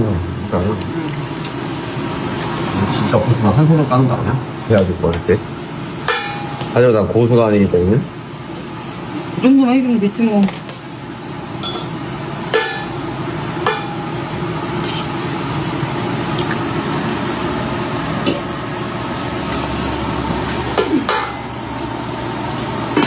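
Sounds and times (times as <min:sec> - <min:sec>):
food sizzling in a frying pan: 0:00.2 - 0:04.7.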